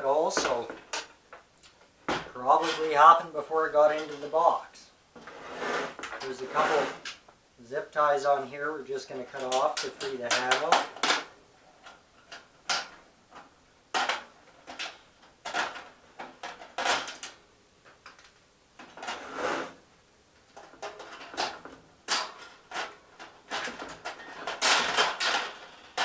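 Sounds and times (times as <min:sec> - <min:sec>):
scrapes and knocks of handling: 0:00.0 - 0:07.4, 0:08.0 - 0:19.8, 0:20.4 - 0:26.0.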